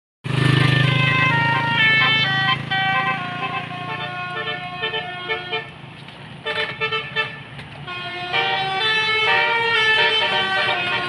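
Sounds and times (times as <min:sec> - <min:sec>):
bus musical horn: 0:00.5 - 0:05.8, 0:06.4 - 0:11.0.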